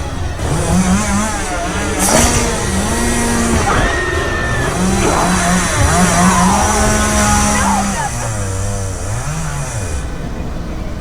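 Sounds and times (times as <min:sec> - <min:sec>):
chainsaw engine revving: 0:00.0 - 0:10.7
voices: 0:00.0 - 0:11.0
high held cry: 0:01.3 - 0:08.9.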